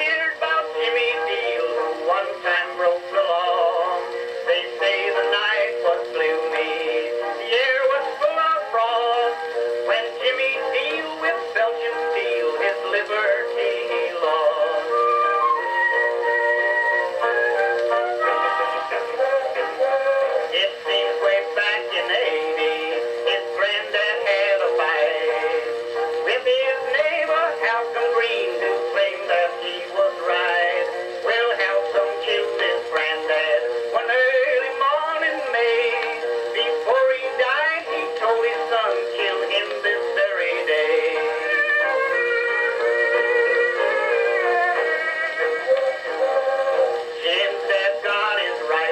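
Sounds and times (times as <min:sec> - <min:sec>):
instrumental accompaniment: 0:00.0 - 0:48.9
man singing: 0:00.0 - 0:48.9.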